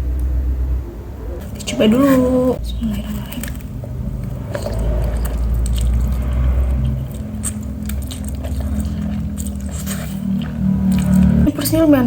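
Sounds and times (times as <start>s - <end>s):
low rumble: 0.0s - 12.0s
person chewing noodles: 2.9s - 11.5s.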